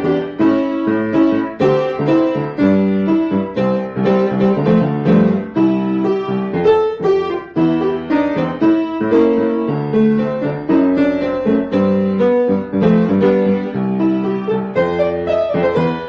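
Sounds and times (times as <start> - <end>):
funk piano chords: 0.0 - 16.0.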